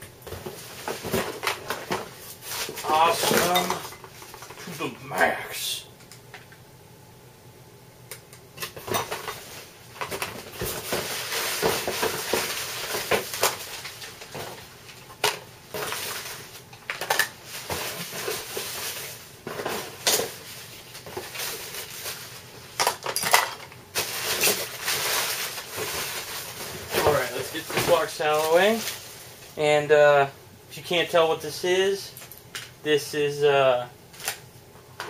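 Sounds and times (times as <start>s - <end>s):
packing material rustling: 0.3s - 5.4s, 8.8s - 22.8s, 23.9s - 29.6s.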